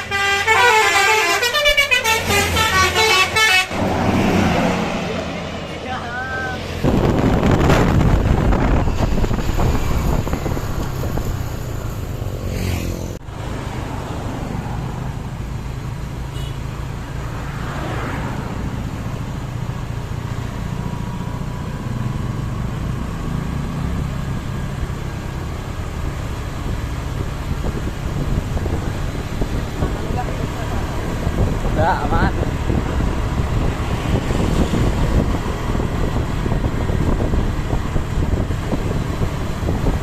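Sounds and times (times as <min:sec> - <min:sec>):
vehicle engines passing: 0:00.0 - 0:40.0.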